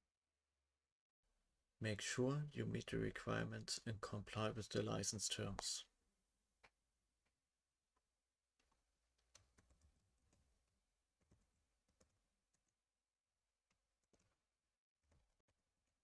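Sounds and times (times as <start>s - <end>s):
keyboard and mouse clicks: 8.6s - 10.4s.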